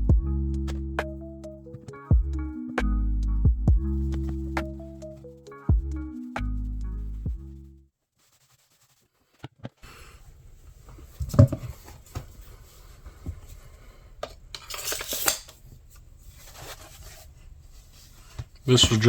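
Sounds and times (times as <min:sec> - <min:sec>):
knife scraping: 0:14.6 - 0:15.6.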